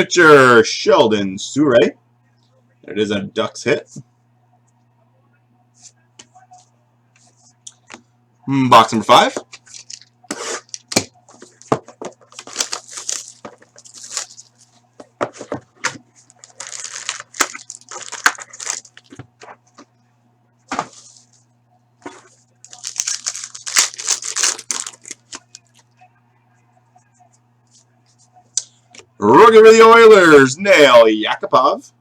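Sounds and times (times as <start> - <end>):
wrapper crinkling and tearing: 9.6 - 11.1, 12.2 - 14.8, 15.8 - 19.2, 22.6 - 25.8.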